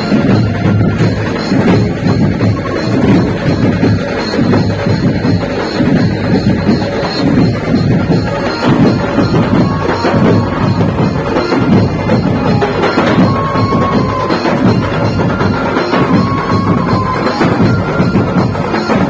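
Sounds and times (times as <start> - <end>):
driving drumming: 0.0 - 19.0
held melody note: 8.1 - 19.0.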